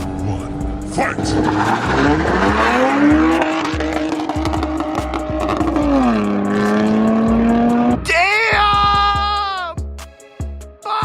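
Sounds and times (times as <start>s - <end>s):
car engine at full throttle: 0.0s - 8.0s.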